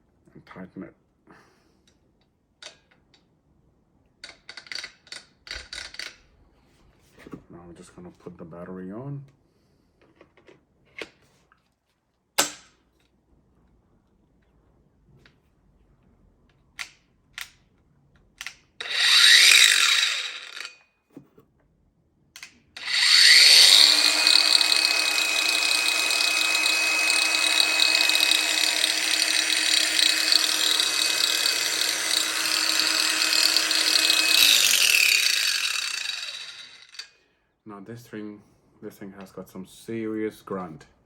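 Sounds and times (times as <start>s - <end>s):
angle grinder whining: 18.8s - 20.7s, 22.8s - 37.1s.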